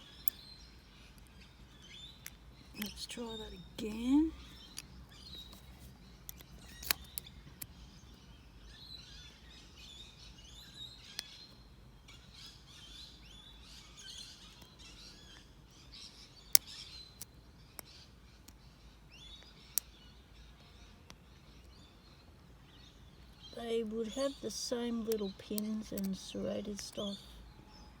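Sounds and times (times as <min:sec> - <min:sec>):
birds chirping: 0:00.0 - 0:28.0
metallic lock pick clicks: 0:06.3 - 0:07.7.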